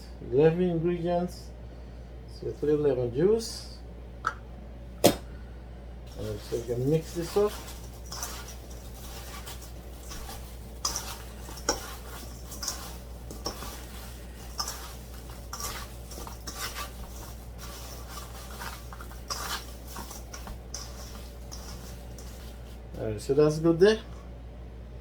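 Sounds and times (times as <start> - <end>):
utensil clinking and scraping bowl: 6.1 - 23.1.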